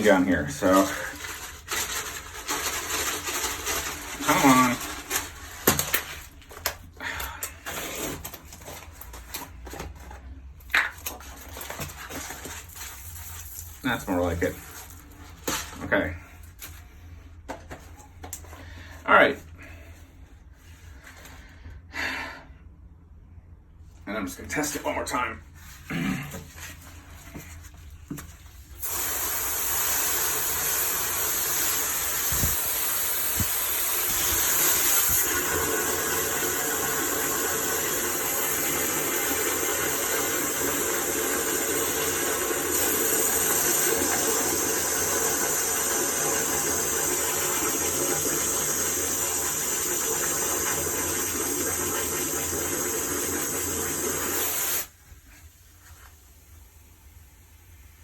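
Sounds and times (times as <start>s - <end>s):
water spray hissing into drain: 28.8s - 55.0s.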